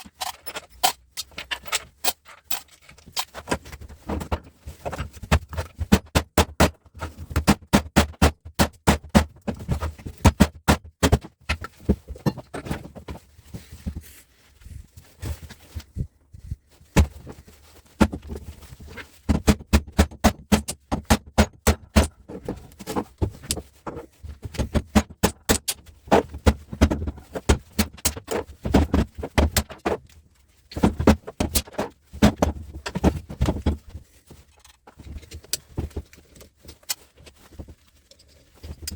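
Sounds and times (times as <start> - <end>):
metal parts and tools clanking: 0.0 - 5.6.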